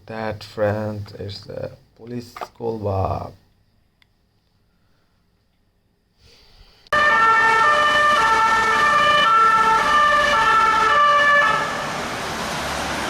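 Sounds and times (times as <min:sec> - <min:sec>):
electronic siren wailing: 0:07.0 - 0:12.0.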